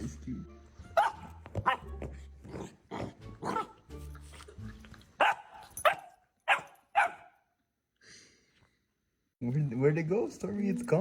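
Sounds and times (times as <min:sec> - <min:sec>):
dog barking: 0:00.9 - 0:02.0, 0:03.4 - 0:03.8, 0:05.2 - 0:07.5.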